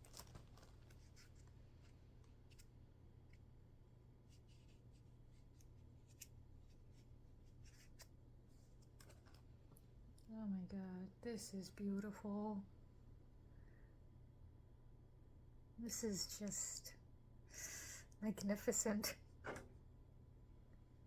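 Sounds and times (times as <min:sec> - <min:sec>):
plastic parts clicking and rubbing: 0:00.0 - 0:02.7
low room hum: 0:00.0 - 0:21.0.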